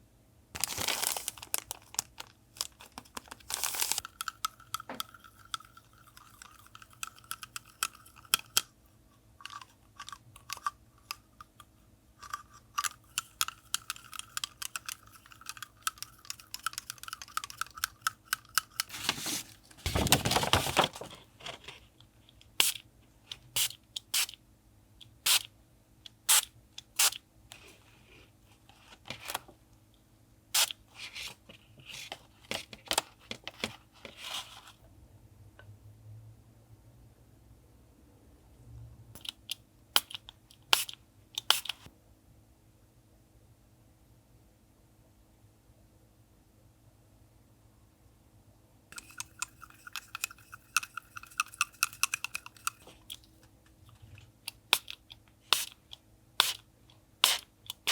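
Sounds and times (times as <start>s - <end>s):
paper rustling: 0.6s - 4.1s, 18.8s - 21.8s
paper taps and crinkles: 18.9s - 21.8s.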